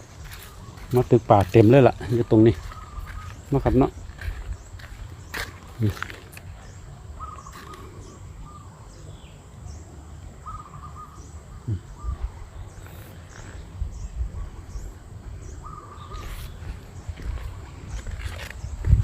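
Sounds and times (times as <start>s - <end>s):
bird warbling call: 0.0s - 9.3s, 10.4s - 18.7s
high bird chirps: 0.0s - 9.4s.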